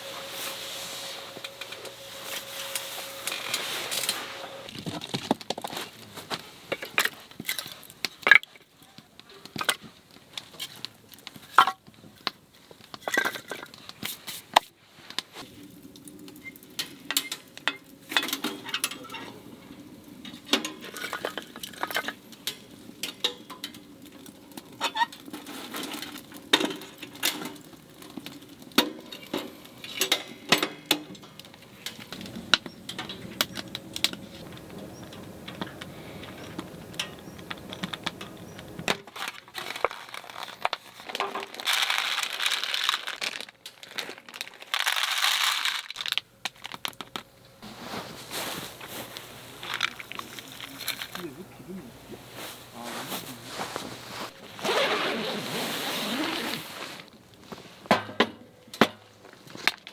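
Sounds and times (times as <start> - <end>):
rustling: 0.0 - 17.5, 31.6 - 57.9.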